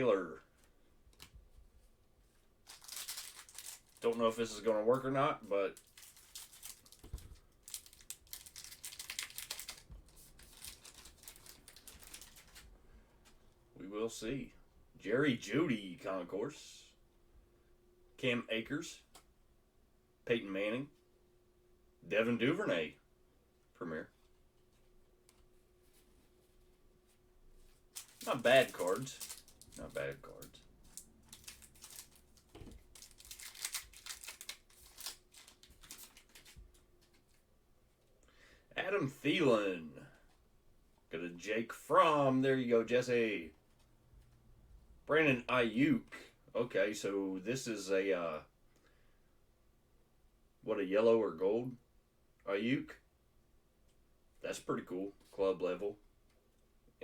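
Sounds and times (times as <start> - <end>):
foil wrapper crinkling and tearing: 2.6 - 5.1, 5.7 - 12.7, 27.9 - 37.1.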